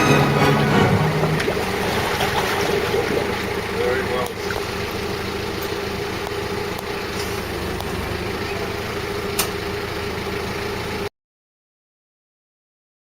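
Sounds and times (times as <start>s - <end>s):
motor humming: 0.0s - 9.6s.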